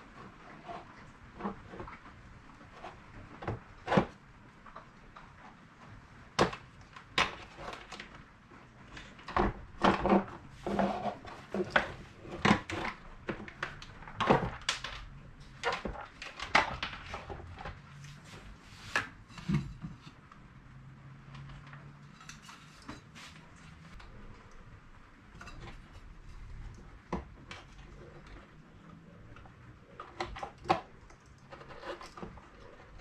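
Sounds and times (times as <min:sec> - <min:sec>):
plastic parts clicking and scraping: 0:00.1 - 0:20.5, 0:21.2 - 0:24.6, 0:25.2 - 0:33.0.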